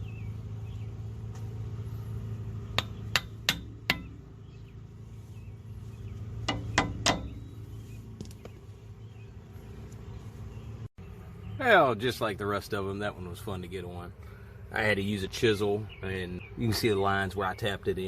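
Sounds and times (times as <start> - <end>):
hammer tapping chisel on metal: 2.8 - 4.2, 6.5 - 7.4.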